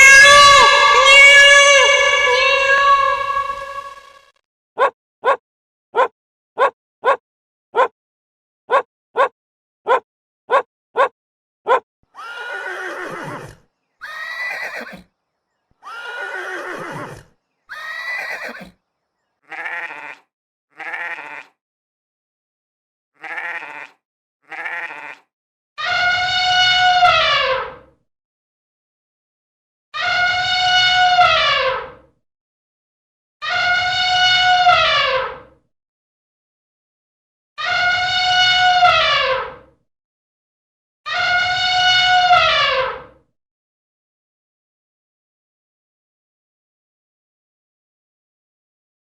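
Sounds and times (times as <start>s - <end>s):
animal calls: 4.8s - 5.4s, 6.0s - 7.2s, 8.7s - 9.3s, 9.9s - 11.1s, 11.7s - 13.4s, 14.0s - 15.1s, 17.7s - 18.8s.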